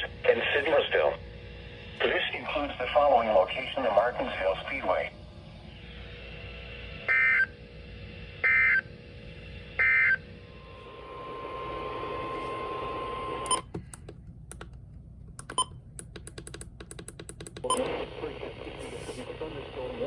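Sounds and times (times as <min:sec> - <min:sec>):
scattered clicks: 0:13.5 - 0:17.9.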